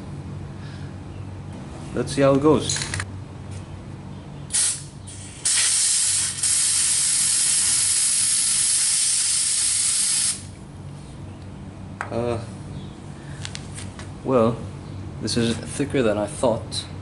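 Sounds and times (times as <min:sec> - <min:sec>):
aerosol can spraying: 0:05.4 - 0:10.5.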